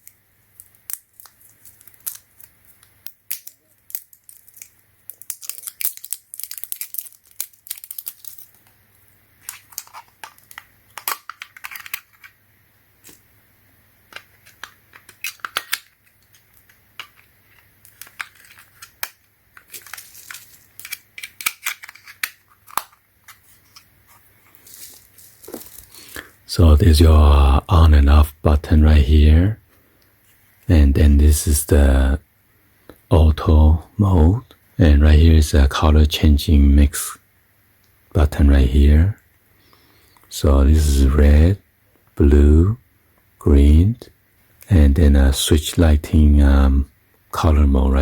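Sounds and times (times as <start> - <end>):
plastic packaging crinkling: 0.0 - 8.8, 9.4 - 12.4, 14.1 - 26.4.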